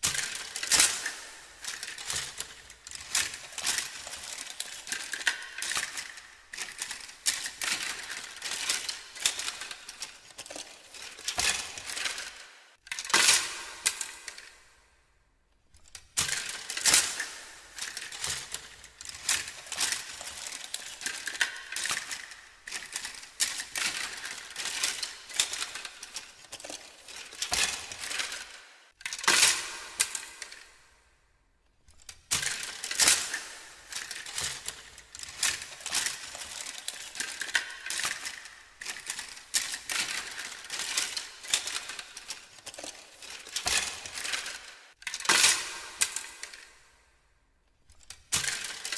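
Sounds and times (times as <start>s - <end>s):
small hard items clattering: 0.0s - 14.5s, 15.8s - 30.7s, 31.9s - 46.8s, 47.9s - 48.9s.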